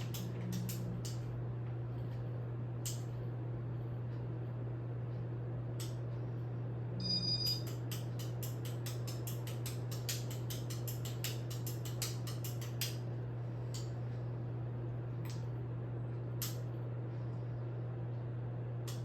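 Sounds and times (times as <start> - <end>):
ceiling fan humming: 0.0 - 19.0
short high beep: 7.0 - 7.6.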